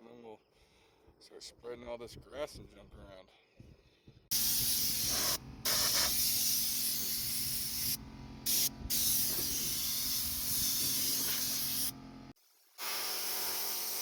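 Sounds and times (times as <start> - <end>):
loud even hiss: 4.3 - 11.9, 12.8 - 14.0
tractor engine running: 4.3 - 12.4.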